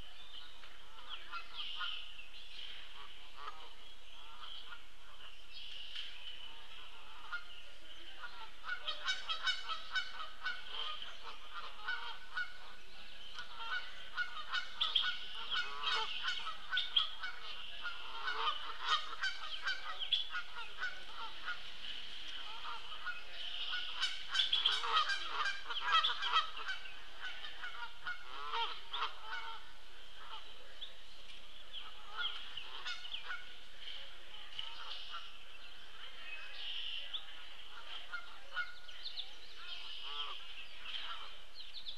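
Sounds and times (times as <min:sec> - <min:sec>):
geese honking: 0:03.0 - 0:05.3, 0:06.5 - 0:21.7, 0:22.3 - 0:30.5, 0:31.8 - 0:33.6, 0:36.6 - 0:38.8, 0:39.6 - 0:41.4.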